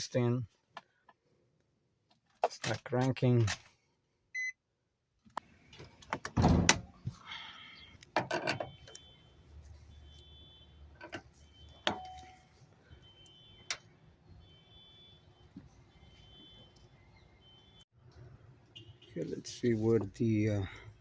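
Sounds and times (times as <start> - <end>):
car warning chime beeping: 11.5 - 13.6.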